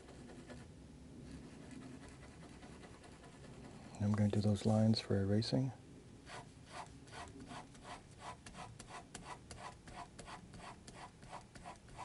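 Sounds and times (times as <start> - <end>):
pencil scratching on paper: 0.0 - 0.7, 1.3 - 3.9, 6.3 - 12.0.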